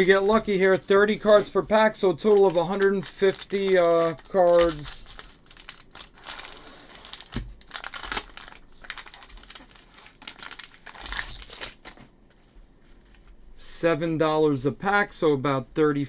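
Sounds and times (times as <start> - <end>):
wrappers crinkling: 0.0 - 12.1.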